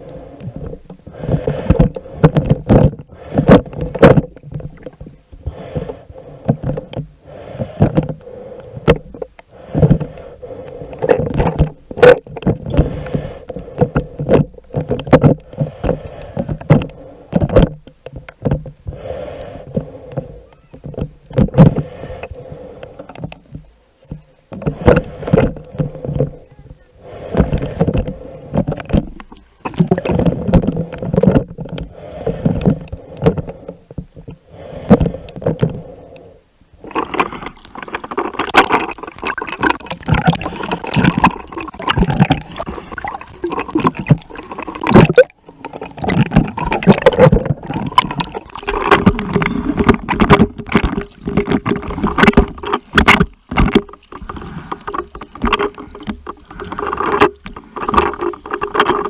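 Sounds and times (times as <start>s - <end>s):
water splashing: 0.0s - 59.0s.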